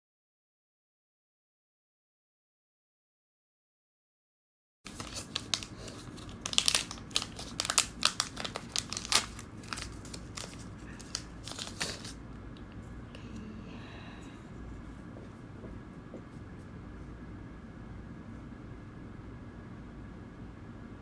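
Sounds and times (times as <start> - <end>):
plastic packaging crinkling: 4.9 - 12.2.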